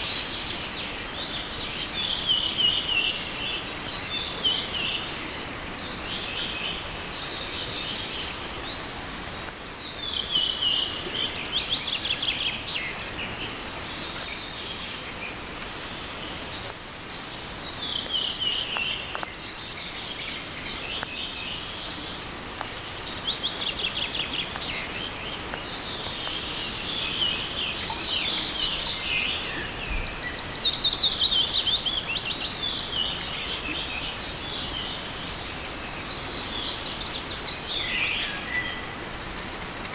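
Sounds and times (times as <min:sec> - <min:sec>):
forest stream rushing: 0:00.0 - 0:39.9
songbird singing: 0:00.0 - 0:39.9.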